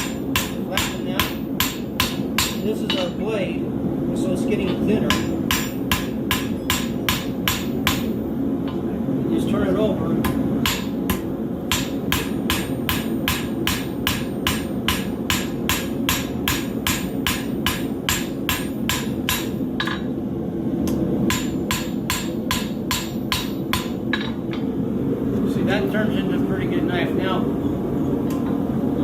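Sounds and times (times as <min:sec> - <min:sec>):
hammer striking metal on an anvil: 0:00.0 - 0:03.2, 0:04.7 - 0:08.8, 0:10.2 - 0:20.2, 0:20.9 - 0:24.7.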